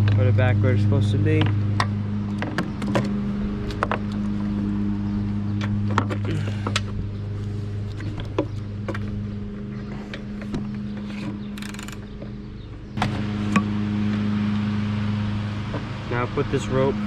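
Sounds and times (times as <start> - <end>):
steady low hum: 0.0 - 17.0
mower parts clicking and knocking: 10.1 - 12.3.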